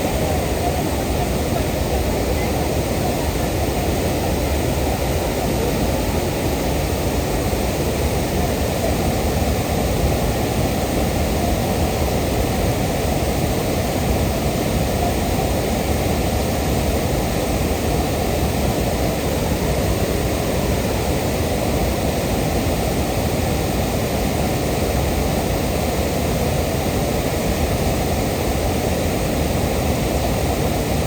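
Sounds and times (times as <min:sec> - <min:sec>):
waterfall rushing: 0:00.0 - 0:31.0.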